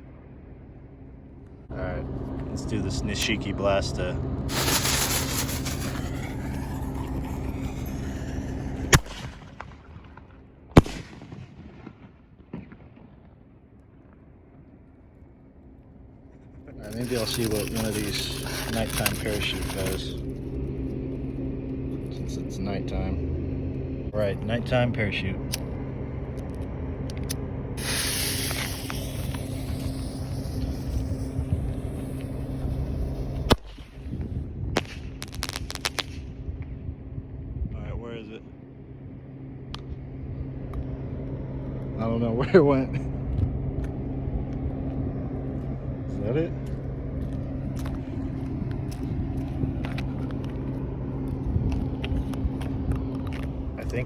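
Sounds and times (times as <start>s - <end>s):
firework rushing noise: 3.9s - 13.1s, 16.8s - 20.5s, 27.8s - 36.4s
firework bangs: 4.5s - 13.4s, 27.8s - 34.1s, 34.7s - 36.3s
faint firework pops: 34.8s - 36.3s.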